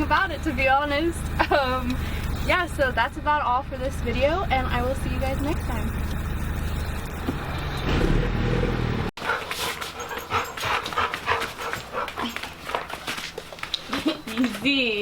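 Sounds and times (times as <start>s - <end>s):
low engine rumble: 0.0s - 9.1s
dog panting: 9.2s - 14.5s.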